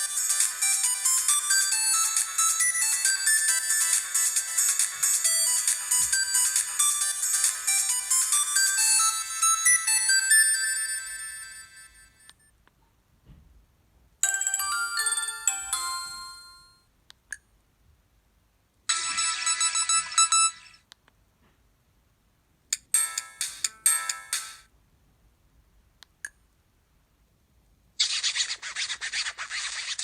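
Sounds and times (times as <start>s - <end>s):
phone ringtone melodies: 0.0s - 12.3s, 14.2s - 16.8s, 18.9s - 20.8s, 22.8s - 24.7s.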